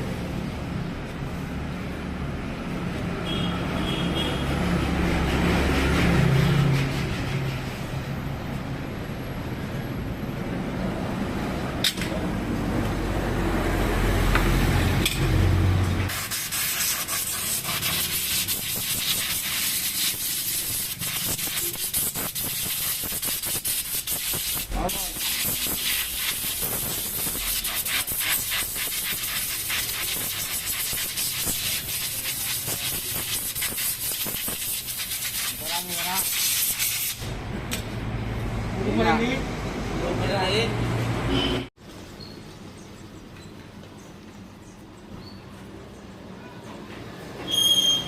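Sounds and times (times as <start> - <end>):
scratchy rubbing noises: 5.0 - 8.0, 16.1 - 37.1.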